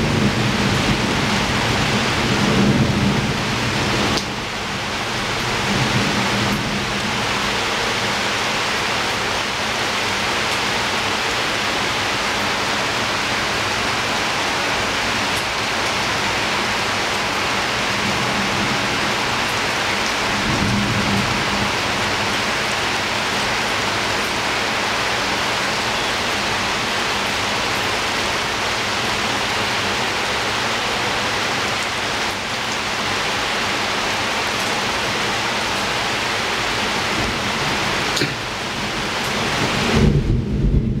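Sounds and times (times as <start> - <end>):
thunder rumbling: 0.0 - 7.5, 17.9 - 23.5, 37.0 - 41.0
rain falling at a window: 0.0 - 41.0.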